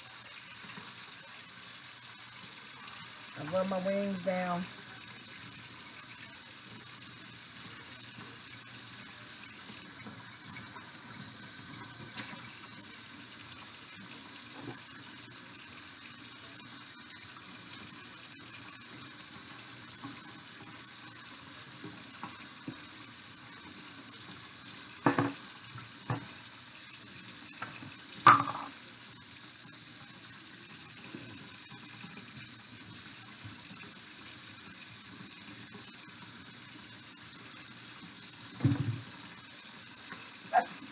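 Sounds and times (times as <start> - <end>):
tap running into sink: 25.0 - 26.4, 27.6 - 28.8, 38.6 - 39.2.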